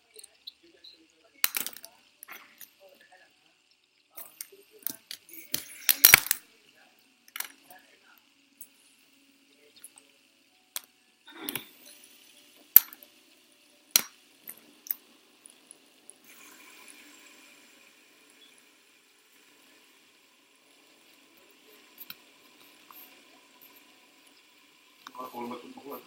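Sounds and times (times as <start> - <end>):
metal fidget spinners clinking: 0.0 - 2.9, 4.1 - 7.9.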